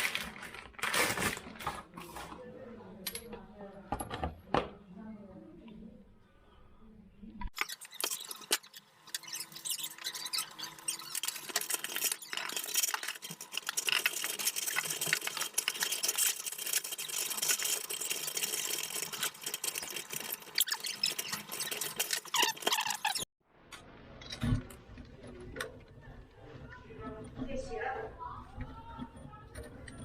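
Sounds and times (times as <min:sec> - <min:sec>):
metal fittings scraping and clicking: 0:07.5 - 0:23.2.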